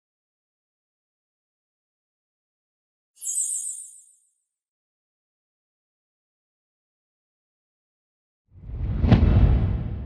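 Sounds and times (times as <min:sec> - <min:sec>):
cinematic whoosh and impact: 0:08.7 - 0:10.0.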